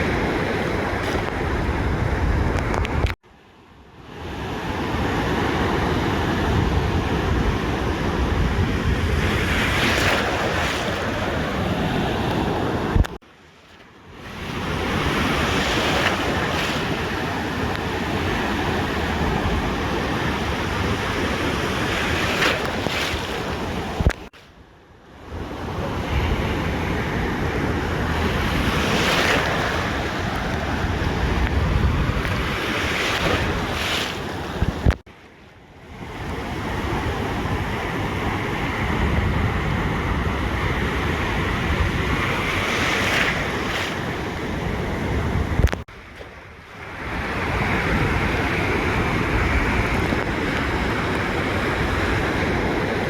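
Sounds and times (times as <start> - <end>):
ocean surf breaking: 0.0 - 3.2, 4.0 - 24.5, 25.3 - 35.1, 35.9 - 53.0
wind buffeting microphone: 0.0 - 3.2, 5.6 - 13.2, 25.4 - 35.0, 35.9 - 53.0.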